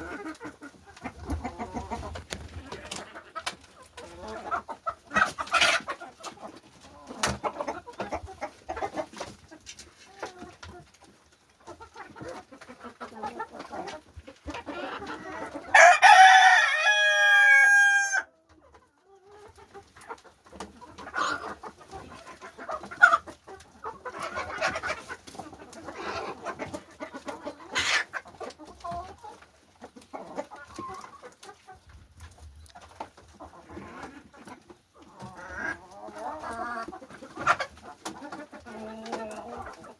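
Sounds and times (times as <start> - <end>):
chickens clucking: 0.0 - 39.9
rooster crowing: 15.8 - 18.3.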